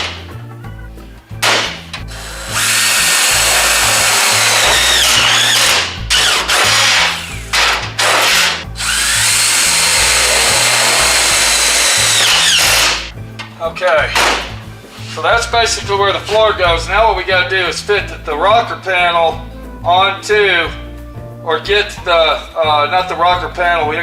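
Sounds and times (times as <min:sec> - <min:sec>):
background music: 0:00.0 - 0:24.0
power drill motor whine: 0:02.1 - 0:13.1.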